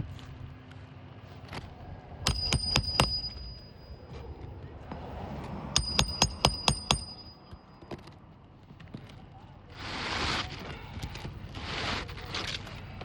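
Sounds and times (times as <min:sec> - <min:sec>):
hammer striking nails: 0:02.3 - 0:03.7, 0:05.8 - 0:07.6.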